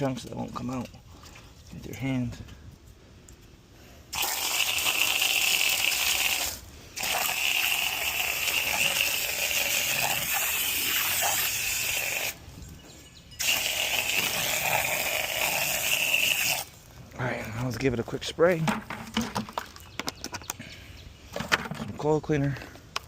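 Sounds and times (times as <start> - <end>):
hose nozzle spraying water: 4.1 - 12.4, 13.4 - 16.8.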